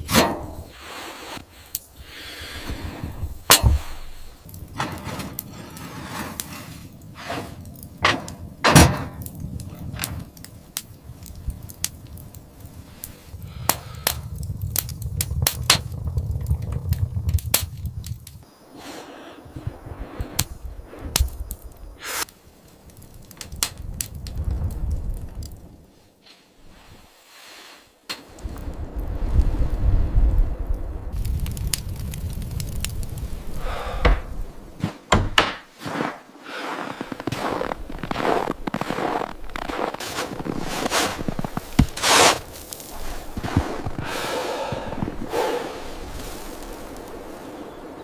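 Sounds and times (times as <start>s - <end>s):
sharp knocks and cracks: 0.0s - 0.7s, 3.4s - 5.6s, 7.8s - 12.3s, 13.6s - 18.4s, 34.0s - 35.9s
low rumble: 12.6s - 18.4s.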